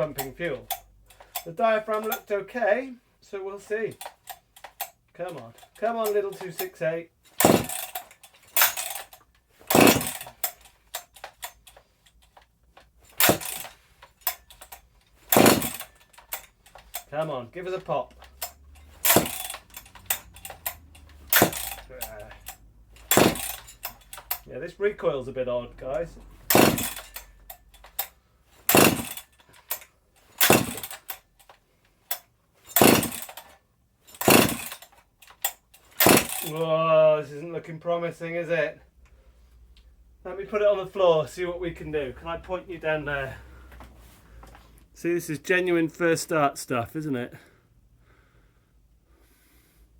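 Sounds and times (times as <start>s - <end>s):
chainsaw pull-start cranking: 0.0s - 2.4s, 3.6s - 36.8s
small clicks and rattles: 0.0s - 2.4s, 3.6s - 24.6s, 25.8s - 36.7s.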